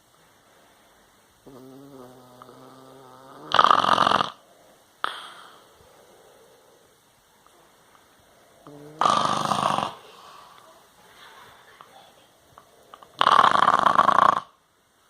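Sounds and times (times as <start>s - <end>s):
dog snorting: 1.4s - 4.4s, 8.6s - 10.1s, 13.0s - 14.5s
dog snoring: 1.4s - 7.0s, 8.6s - 10.2s, 12.9s - 14.6s.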